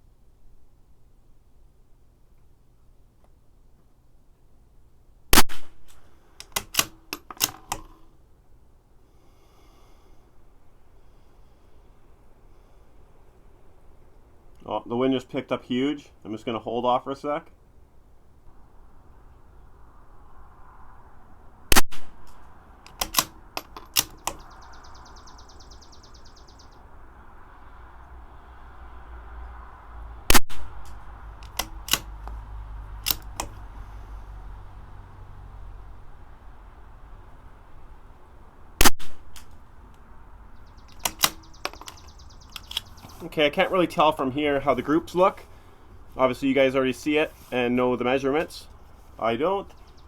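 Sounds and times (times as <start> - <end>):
rifle shot: 5.3 - 7.9, 21.7 - 22.4, 30.3 - 32.1, 38.8 - 39.6
rifle bolt metallic clicks: 5.4 - 8.1, 21.9 - 24.5, 30.5 - 32.4, 33.0 - 33.6, 38.9 - 39.6, 40.9 - 43.1.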